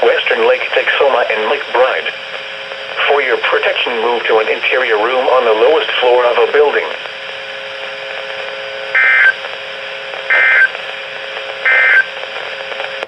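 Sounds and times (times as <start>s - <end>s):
radio hiss: 0.0s - 13.0s
digital data bursts: 8.9s - 9.4s, 10.3s - 10.7s, 11.6s - 12.1s.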